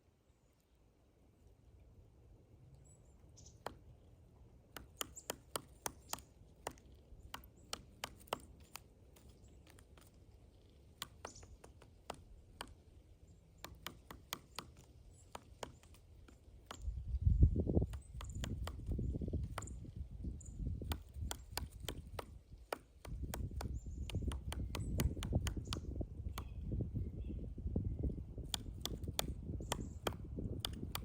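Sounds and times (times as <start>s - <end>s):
woodpecker knocking on tree: 3.5s - 3.9s, 4.7s - 20.0s, 20.7s - 26.6s, 28.4s - 31.0s.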